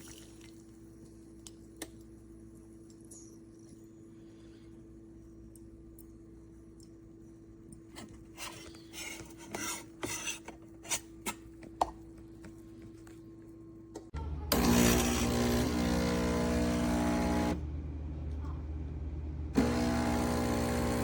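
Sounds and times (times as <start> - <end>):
espresso machine buzzing and hissing: 14.5 - 17.7, 19.5 - 21.0.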